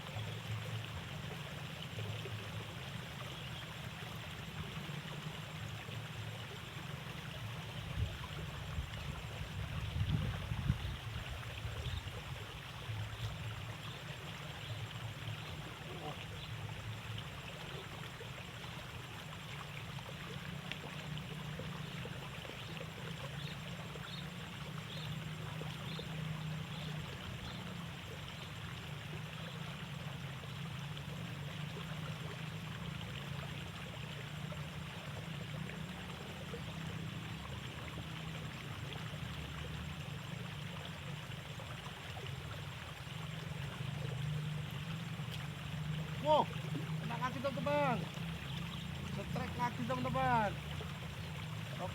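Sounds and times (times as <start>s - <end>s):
water rushing in a ditch: 0.0s - 51.9s.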